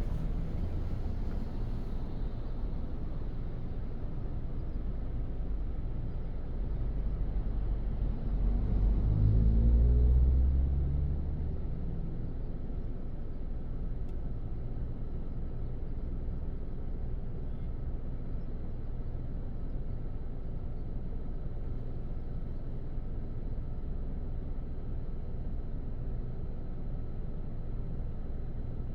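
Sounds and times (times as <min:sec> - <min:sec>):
rumble with rising tone: 0:00.0 - 0:04.7
car driving on road: 0:00.0 - 0:05.7.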